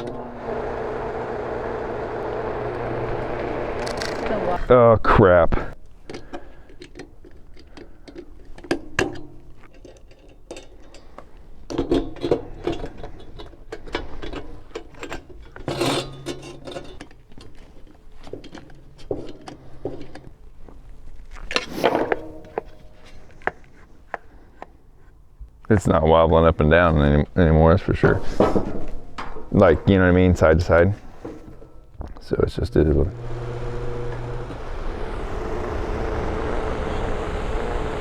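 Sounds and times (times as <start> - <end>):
plastic fan parts clicking and clattering: 0.0 - 4.6.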